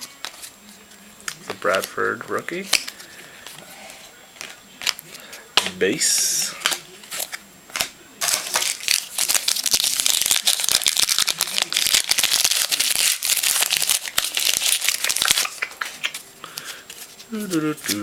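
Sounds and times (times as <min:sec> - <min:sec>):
foil wrapper crinkling: 0:06.6 - 0:18.0.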